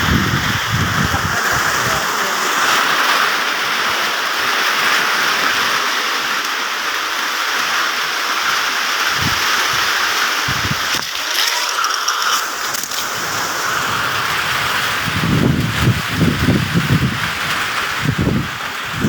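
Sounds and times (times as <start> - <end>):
rain on plant leaves: 0.0 - 19.0.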